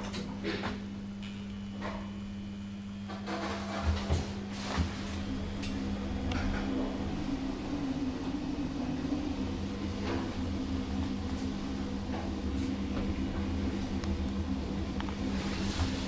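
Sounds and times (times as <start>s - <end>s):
lift machinery humming: 3.9s - 16.0s.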